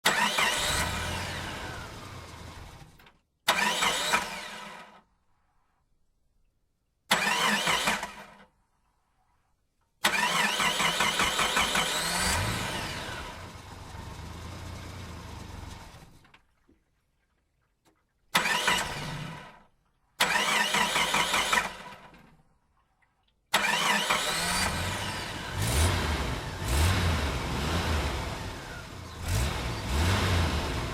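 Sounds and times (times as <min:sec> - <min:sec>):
engine starting and revving: 0:00.0 - 0:05.0, 0:07.1 - 0:08.5, 0:10.0 - 0:16.3, 0:18.4 - 0:19.6, 0:20.2 - 0:22.2, 0:23.5 - 0:30.9.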